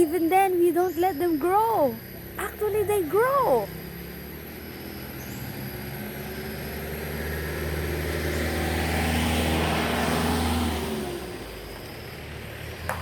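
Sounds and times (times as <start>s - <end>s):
vehicle engine passing by: 3.5s - 13.0s.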